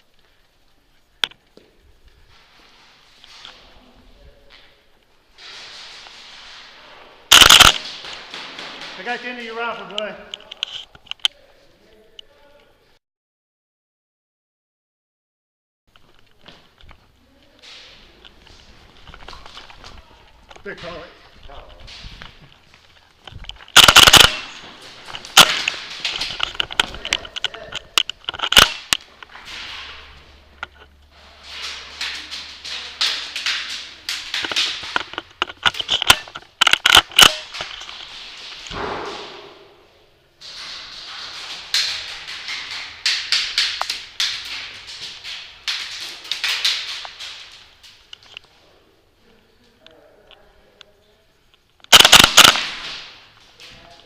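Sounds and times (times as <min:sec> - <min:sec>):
airsoft guns firing: 0:07.3 - 0:09.4, 0:23.8 - 0:26.4, 0:51.9 - 0:53.3.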